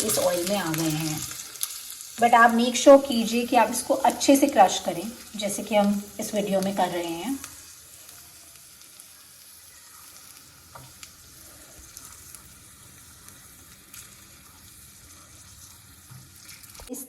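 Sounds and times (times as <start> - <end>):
oil sizzling in a pan: 0.0 - 17.0.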